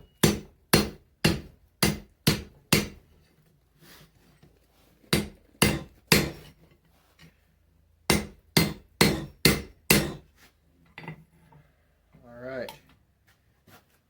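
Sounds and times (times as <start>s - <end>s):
hammer striking steel on anvil: 0.0s - 3.0s, 5.1s - 6.5s, 8.1s - 10.2s.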